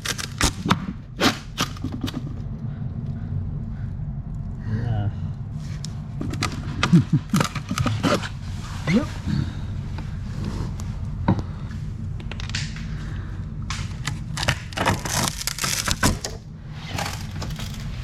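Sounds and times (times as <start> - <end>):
fiberglass cracking and snapping: 0.0 - 2.5, 5.8 - 8.4, 12.2 - 13.0, 13.6 - 18.0
steady low hum: 0.0 - 18.0.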